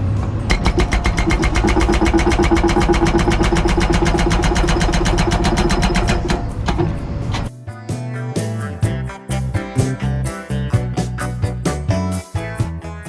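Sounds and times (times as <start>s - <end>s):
machine engine running: 0.0s - 7.5s
hydraulic hammer pounding rock: 0.4s - 7.5s
music: 1.1s - 6.8s, 7.4s - 13.0s.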